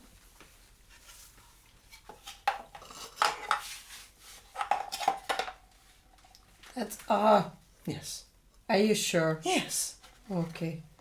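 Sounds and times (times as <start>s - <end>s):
hard objects clicking and knocking: 4.6s - 5.6s.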